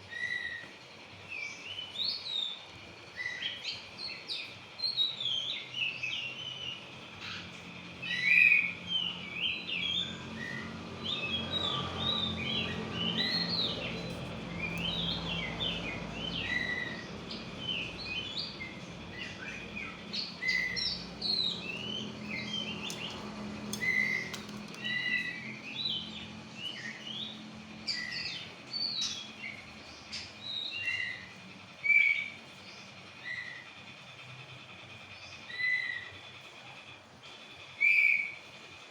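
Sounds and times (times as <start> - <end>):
magpie-robin singing: 0.0 - 0.7, 1.3 - 33.7, 35.2 - 36.1, 37.8 - 38.4.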